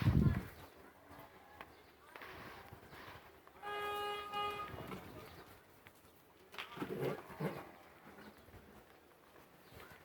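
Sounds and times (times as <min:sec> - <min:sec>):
faint outdoor background: 0:00.0 - 0:10.0
vehicle horn: 0:03.6 - 0:05.0.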